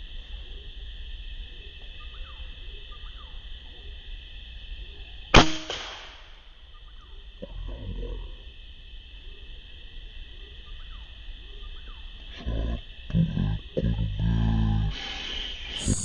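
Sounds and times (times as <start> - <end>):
air rifle shot: 5.4 - 6.3.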